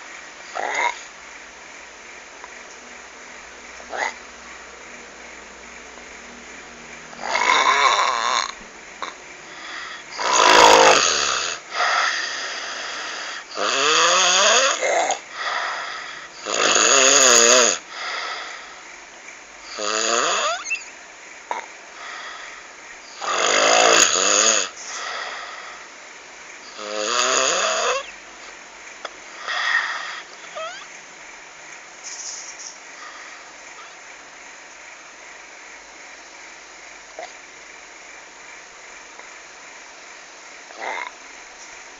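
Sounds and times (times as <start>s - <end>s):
person snoring: 0.5s - 1.1s, 7.1s - 18.8s, 19.7s - 20.7s, 23.2s - 25.8s, 26.7s - 28.1s, 40.7s - 41.1s.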